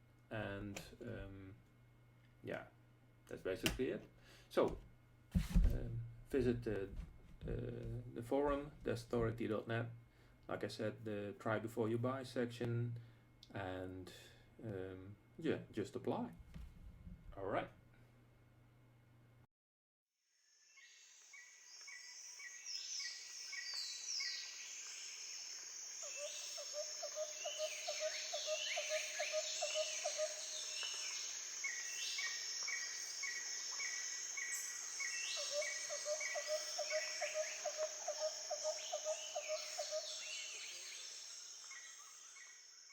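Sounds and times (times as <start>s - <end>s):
insect drone: 20.2s - 42.9s
birds chirping: 20.8s - 42.9s
low rapid bird trill: 25.8s - 42.9s.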